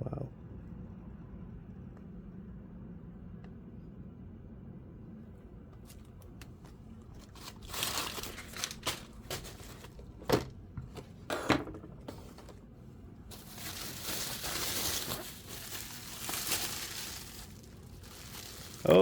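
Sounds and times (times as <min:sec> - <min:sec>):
packaging crinkling and rustling: 0:07.0 - 0:11.2, 0:12.0 - 0:12.6, 0:13.2 - 0:19.0.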